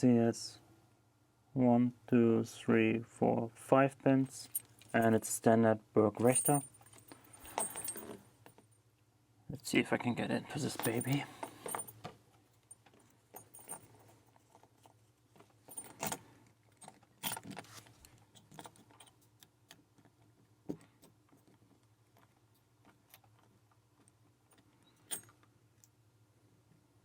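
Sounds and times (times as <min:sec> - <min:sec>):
keys jangling on padlock: 0:06.2 - 0:08.2, 0:10.6 - 0:12.0, 0:13.4 - 0:14.0, 0:15.7 - 0:16.2, 0:25.0 - 0:25.4.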